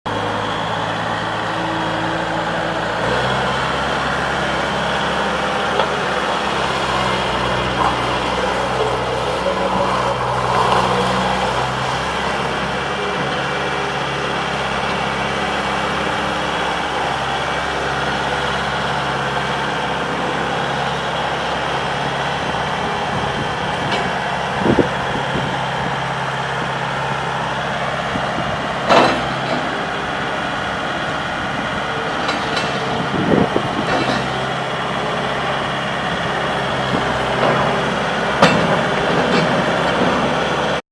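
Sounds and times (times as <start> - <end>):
diesel engine running: 0.1 - 40.8
metal knocks and clanks: 38.4 - 40.3.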